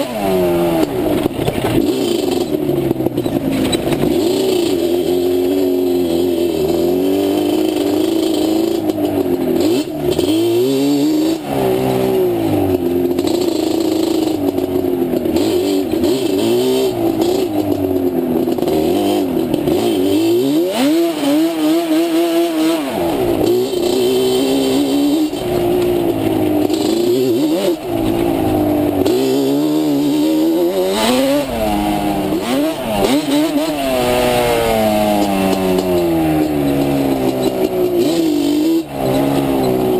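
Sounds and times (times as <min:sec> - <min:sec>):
two-stroke engine revving: 0:00.0 - 0:39.9.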